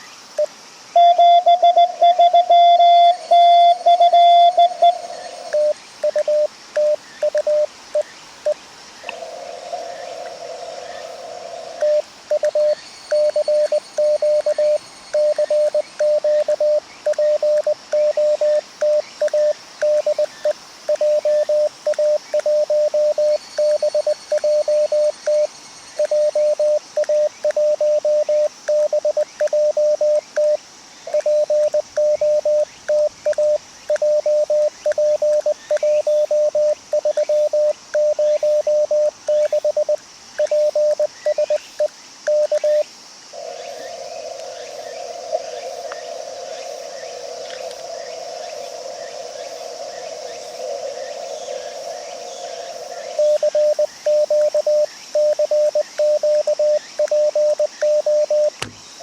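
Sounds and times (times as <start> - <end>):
faint receiver hiss: 0.0 - 9.2, 10.1 - 43.0, 53.4 - 59.0
faint high whistle: 1.0 - 7.6
morse code tone: 1.0 - 7.7, 11.8 - 20.3, 20.9 - 30.6, 31.2 - 41.6, 53.2 - 58.8.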